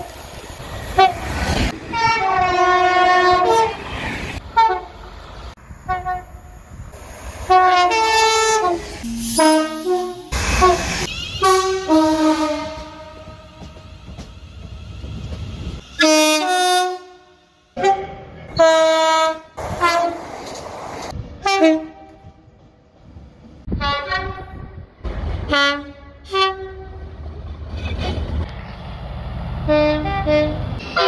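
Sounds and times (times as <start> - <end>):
low rumble of trains: 0.0 - 31.0
two-tone train horn blasts: 1.9 - 3.7, 4.6 - 4.9, 5.9 - 6.4, 7.5 - 13.8, 16.0 - 20.2, 21.4 - 22.4, 23.7 - 24.8, 25.5 - 27.0, 29.7 - 31.0.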